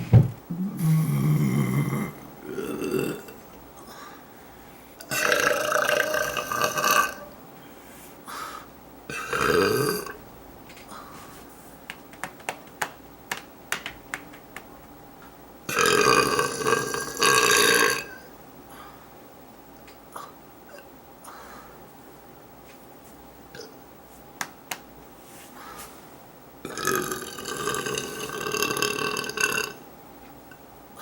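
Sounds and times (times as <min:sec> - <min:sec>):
woman burping: 0:00.5 - 0:03.4, 0:05.0 - 0:07.3, 0:09.1 - 0:10.2.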